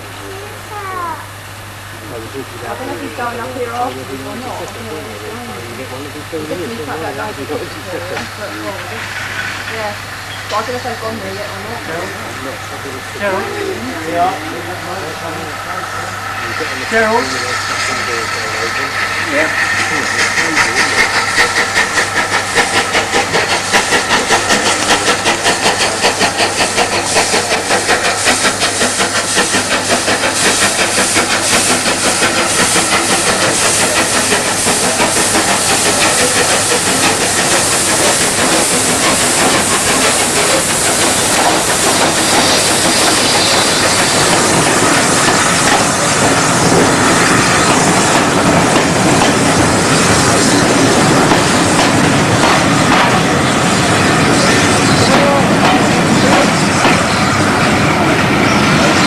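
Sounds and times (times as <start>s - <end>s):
steam hiss: 0.0s - 59.0s
steam train rhythmic beat: 13.4s - 59.0s.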